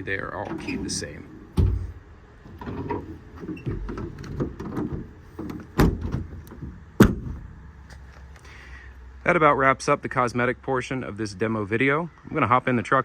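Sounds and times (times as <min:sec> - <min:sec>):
drawers banging shut: 0:00.4 - 0:06.4
metal drawers rattling: 0:00.4 - 0:07.1.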